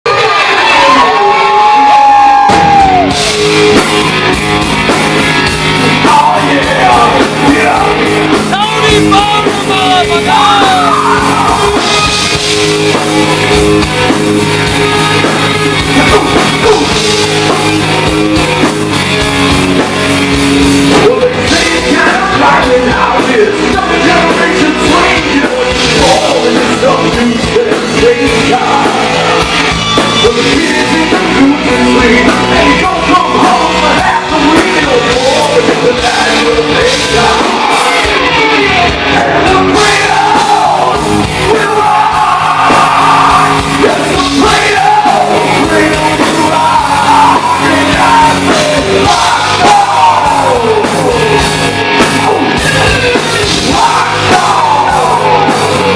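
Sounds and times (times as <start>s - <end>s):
rock band playing live: 0.0s - 55.9s
person singing: 5.8s - 12.3s, 14.7s - 17.6s, 20.9s - 55.9s.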